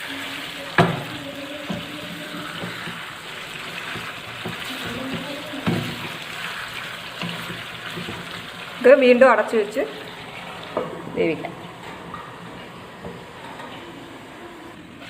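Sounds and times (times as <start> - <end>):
chicken sizzling in oil: 0.0 - 11.4
spoon stirring: 1.2 - 9.0
spoon knocking against pan: 3.7 - 6.2, 7.2 - 8.5.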